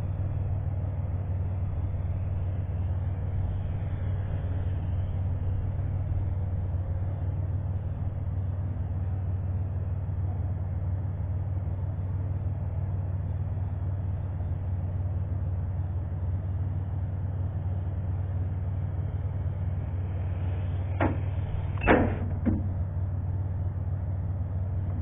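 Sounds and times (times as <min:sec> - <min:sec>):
short knocks: 0:21.0 - 0:22.8.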